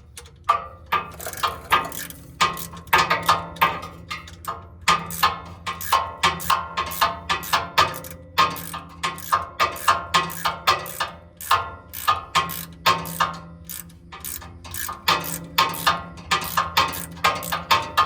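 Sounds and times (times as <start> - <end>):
ratchet wrench clicking: 1.0 - 3.4, 4.2 - 18.0.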